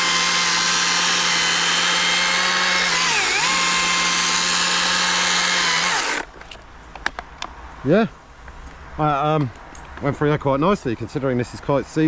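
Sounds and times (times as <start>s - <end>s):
chainsaw electric whine: 0.0s - 6.3s.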